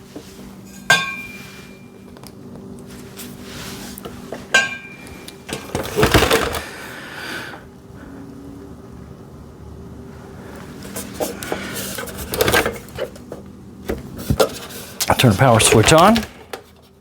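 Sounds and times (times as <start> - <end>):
faint steady hum: 0.0 - 17.0
metal clink: 0.8 - 1.5.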